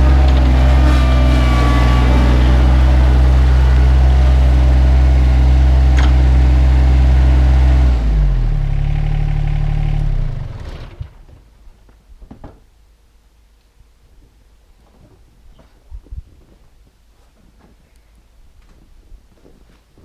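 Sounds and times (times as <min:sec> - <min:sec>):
tractor diesel engine running: 0:00.0 - 0:11.2
single click: 0:06.0 - 0:06.2.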